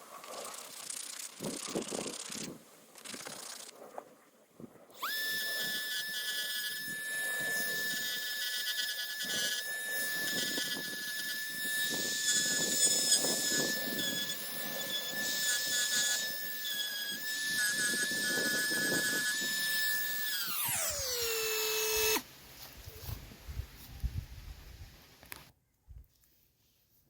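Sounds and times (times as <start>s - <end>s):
bit grinding fiberglass: 0.3s - 3.8s, 5.0s - 22.3s
rotary tool whining: 0.3s - 3.8s, 5.0s - 22.3s.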